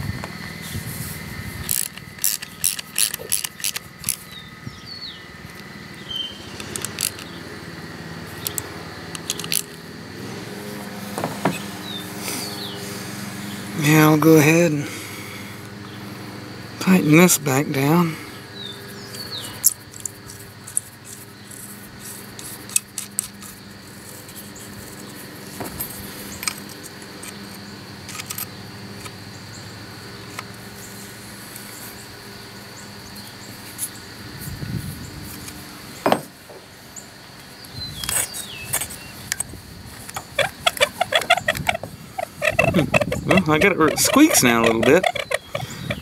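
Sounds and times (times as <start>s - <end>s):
metal tools clicking and clinking: 1.7s - 4.2s, 9.2s - 9.7s.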